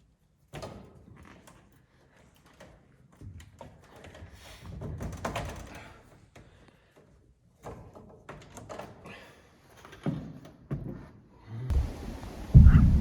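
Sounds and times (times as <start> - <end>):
rustling and clatter: 0.0 - 9.1.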